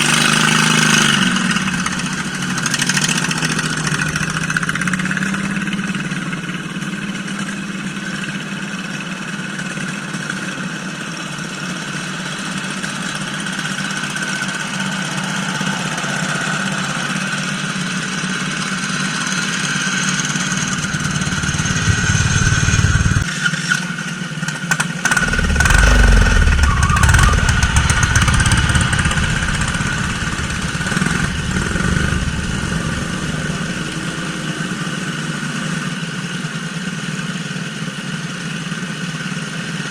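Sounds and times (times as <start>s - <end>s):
lawn mower engine running: 19.8s - 23.2s, 25.0s - 34.8s.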